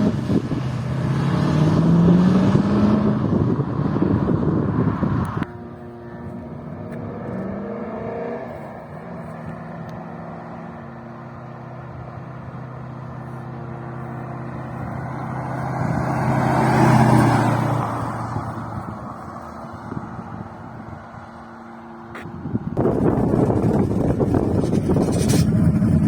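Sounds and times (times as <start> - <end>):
car engine running: 21.6 - 26.0.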